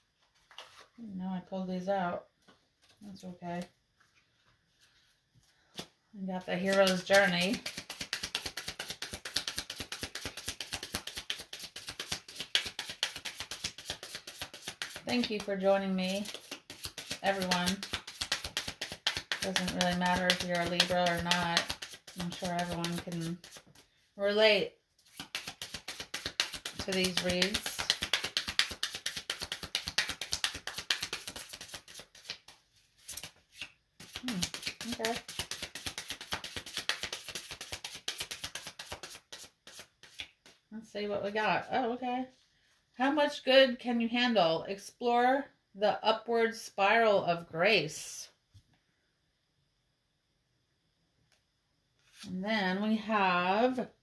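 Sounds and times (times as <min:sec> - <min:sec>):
cards being shuffled: 0:05.7 - 0:23.8, 0:25.0 - 0:40.6.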